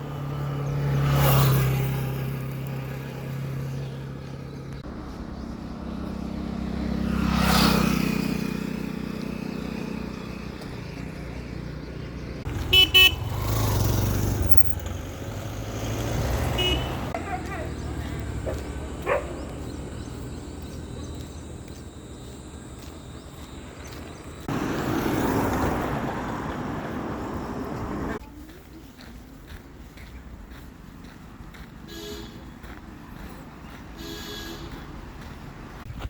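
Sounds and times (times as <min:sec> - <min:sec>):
vehicles passing: 0:00.0 - 0:36.0
vehicle horn toots: 0:12.5 - 0:13.6, 0:16.4 - 0:17.2, 0:31.9 - 0:32.6, 0:34.0 - 0:34.9.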